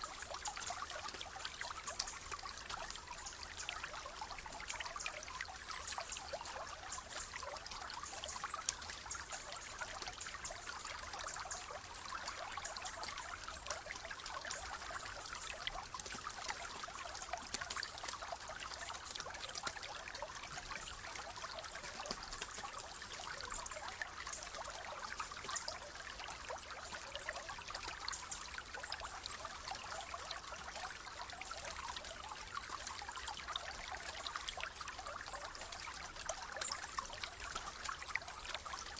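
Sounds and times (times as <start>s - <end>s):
stream trickling over stones: 0.0s - 38.9s.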